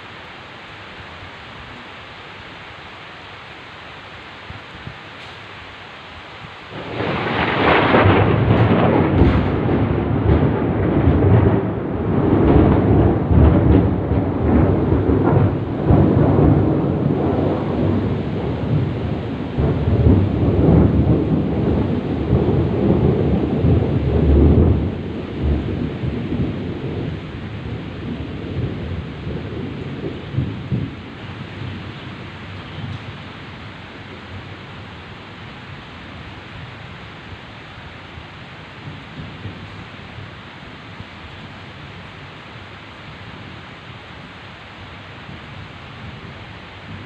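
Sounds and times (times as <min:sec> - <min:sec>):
heavy rain hiss: 0:00.0 - 0:47.0
thunder rumbling: 0:06.6 - 0:42.2.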